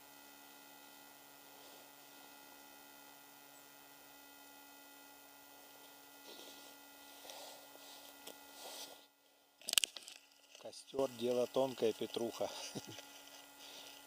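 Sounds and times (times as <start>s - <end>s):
steady electrical hum: 0.0s - 14.0s
campfire crackling: 9.5s - 14.0s.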